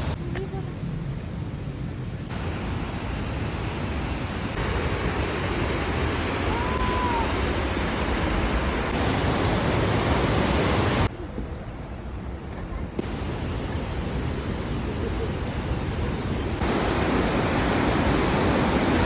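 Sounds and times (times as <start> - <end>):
river rushing: 2.3 - 11.1, 13.0 - 19.0.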